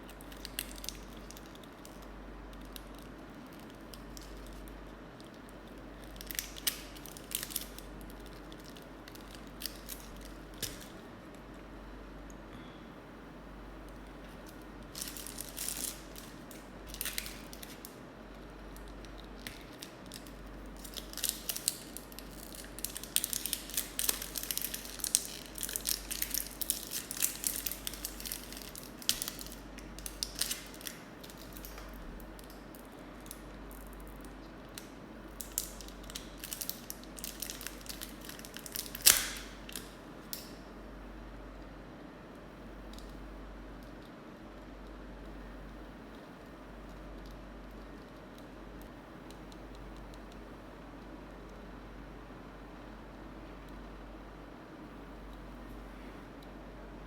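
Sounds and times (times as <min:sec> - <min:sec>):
plastic packaging crinkling: 0:00.0 - 0:11.0, 0:14.0 - 0:40.6.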